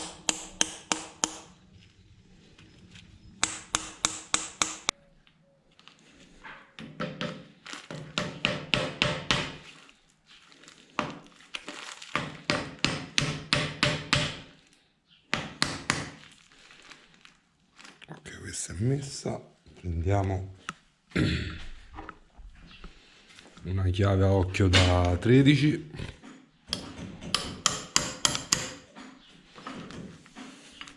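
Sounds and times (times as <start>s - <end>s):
hammer tapping metal: 0.0s - 1.5s, 3.4s - 4.9s, 26.7s - 28.9s.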